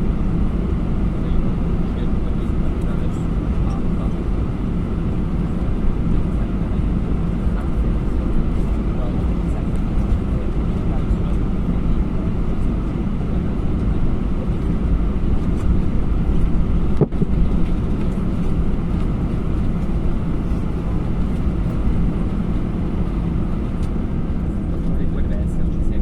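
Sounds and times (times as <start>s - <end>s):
airplane cabin engine noise: 0.0s - 26.0s.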